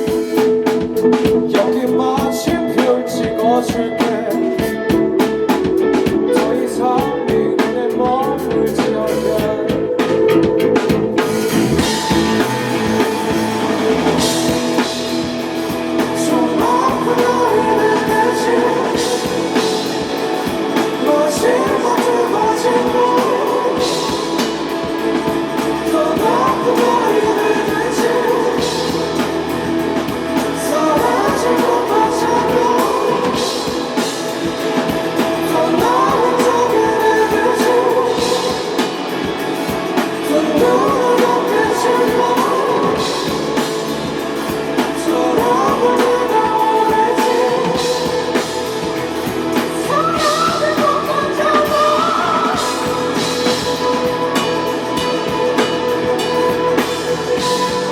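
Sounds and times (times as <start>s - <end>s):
pitch-bending lead guitar line: 0.0s - 57.9s
rock band playing: 0.0s - 57.9s.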